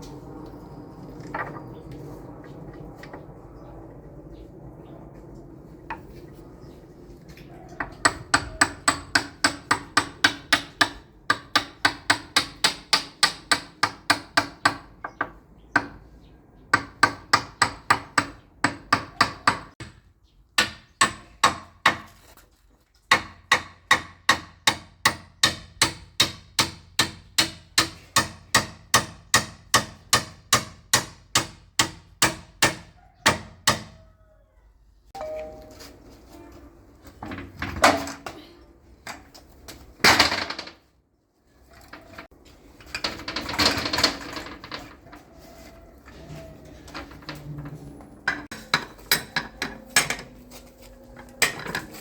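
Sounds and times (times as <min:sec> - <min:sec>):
hammer striking metal: 0:48.3 - 0:50.3.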